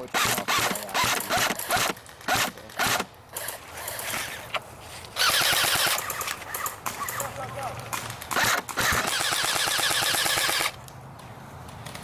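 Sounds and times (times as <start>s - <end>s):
airsoft guns firing bursts: 0.0s - 4.3s, 5.2s - 10.8s.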